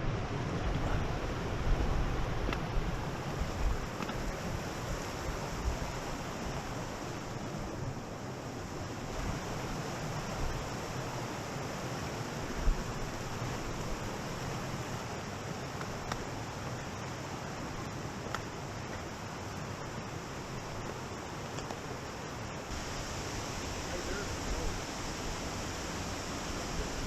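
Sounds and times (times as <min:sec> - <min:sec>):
wind rumble on microphone: 0:00.0 - 0:18.6
waterfall rushing: 0:22.3 - 0:27.0.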